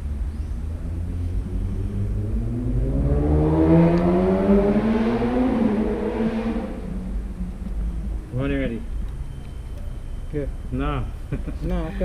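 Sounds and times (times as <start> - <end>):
vehicle engine accelerating: 0.0 - 8.4.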